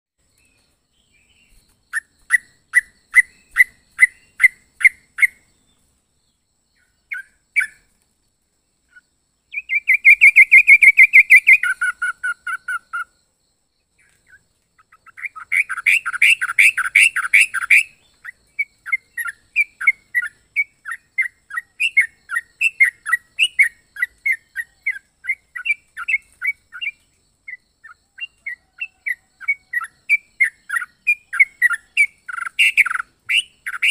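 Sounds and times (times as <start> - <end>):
bird chirping and trilling: 0.4 - 8.0, 8.8 - 13.2, 14.0 - 33.9.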